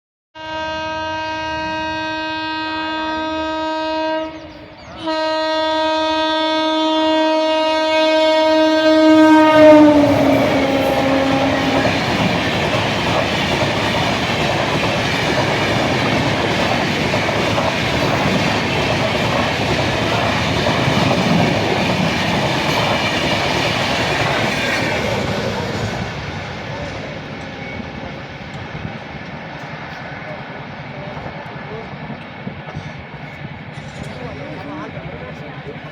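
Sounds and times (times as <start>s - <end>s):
locomotive horn blasts: 0.4s - 12.3s.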